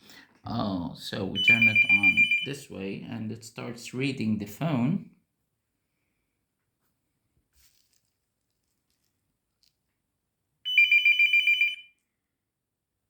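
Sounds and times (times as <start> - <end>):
electronic phone ring: 1.4 - 2.6, 10.7 - 12.0.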